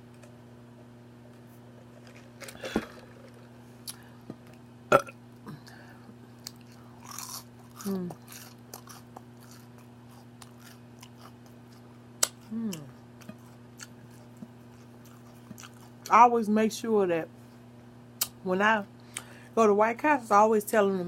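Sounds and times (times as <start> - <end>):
low throat sounds: 4.9 - 5.7
chewing and smacking food: 6.4 - 16.1.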